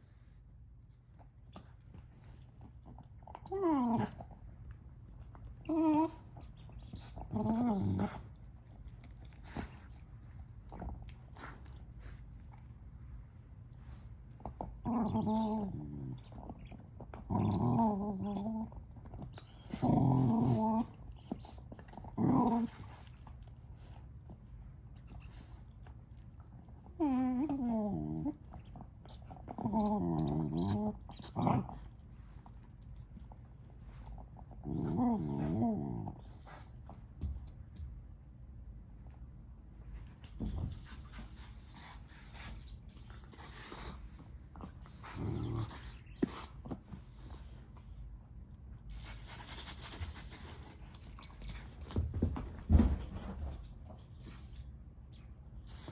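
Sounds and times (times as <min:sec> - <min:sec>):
dog growling and warbling: 0:03.0 - 0:04.4, 0:06.8 - 0:08.3, 0:14.6 - 0:23.0, 0:26.9 - 0:32.0, 0:34.4 - 0:36.5, 0:44.6 - 0:46.4
squeaky toy squeaking: 0:06.8 - 0:08.3, 0:44.9 - 0:46.6.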